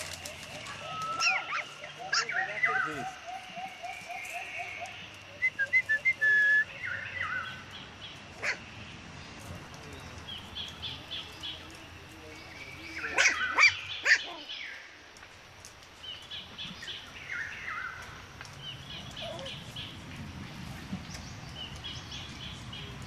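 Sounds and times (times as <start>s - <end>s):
puppies yelping: 0.0s - 4.9s, 8.4s - 8.6s, 13.0s - 14.5s.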